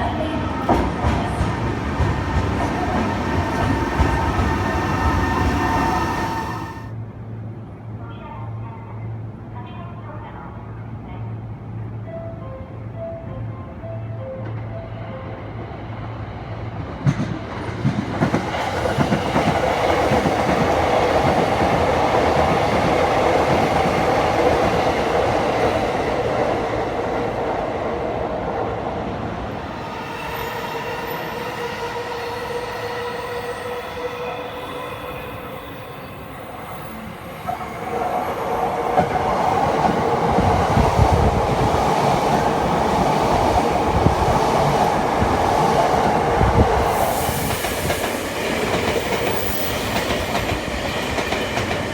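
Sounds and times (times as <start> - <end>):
train wheels rumbling on rails: 0.0 - 7.0, 16.0 - 28.6, 36.8 - 51.9
high whine of train: 0.0 - 51.9.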